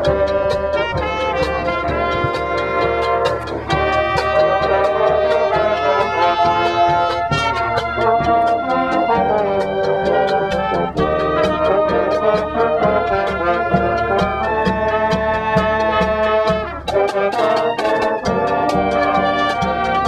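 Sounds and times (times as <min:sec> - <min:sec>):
brass band playing: 0:00.0 - 0:20.0
steady drum beat: 0:00.0 - 0:20.0.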